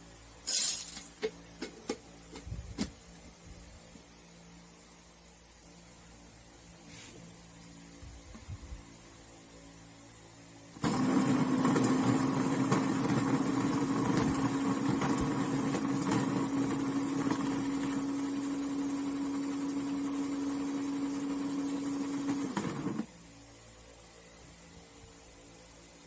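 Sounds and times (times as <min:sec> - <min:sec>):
coffee beans crackling: 0:00.5 - 0:01.1
coffee grinder motor humming: 0:10.8 - 0:23.1.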